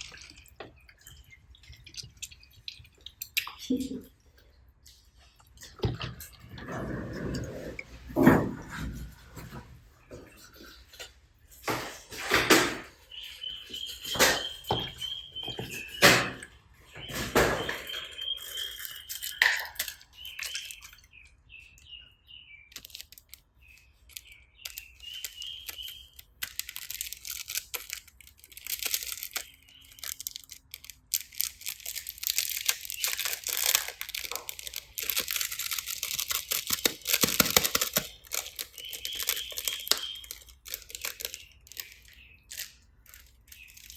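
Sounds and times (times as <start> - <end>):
slime crackling and crunching: 0.0 - 4.0, 17.1 - 21.2, 22.8 - 43.9
slime squelching: 0.0 - 8.6, 13.1 - 43.9.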